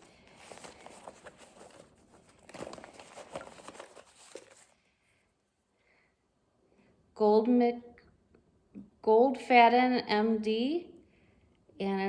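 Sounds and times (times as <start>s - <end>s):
packaging rustling and crinkling: 0.0s - 4.8s.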